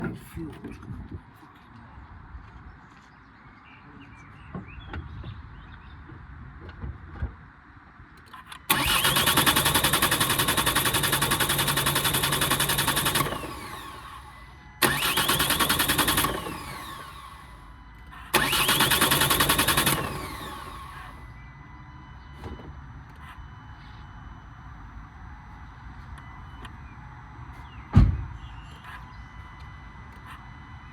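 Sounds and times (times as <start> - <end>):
starter motor cranking: 8.5 - 17.6, 18.3 - 21.2.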